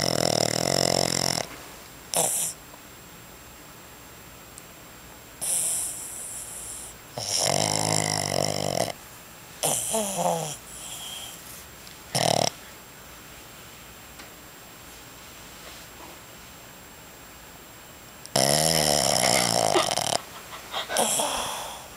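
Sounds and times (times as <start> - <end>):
dog snoring: 0.0 - 1.5, 2.1 - 2.6, 5.4 - 9.0, 9.6 - 11.5, 12.1 - 12.6, 18.3 - 21.9
dog snorting: 0.0 - 1.5, 2.1 - 2.6, 5.4 - 9.0, 9.6 - 11.5, 12.1 - 12.6, 18.3 - 21.8.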